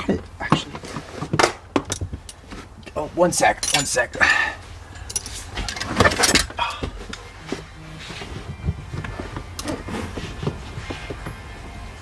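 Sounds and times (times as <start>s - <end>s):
metal tools clinking: 3.3s - 7.3s.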